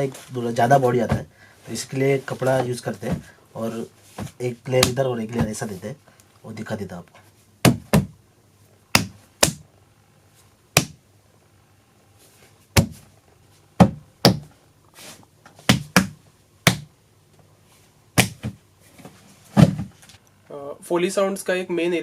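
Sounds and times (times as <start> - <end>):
heavy punch thuds: 7.6 - 8.2, 8.9 - 9.6, 10.8 - 11.0, 12.8 - 13.0, 18.2 - 18.6.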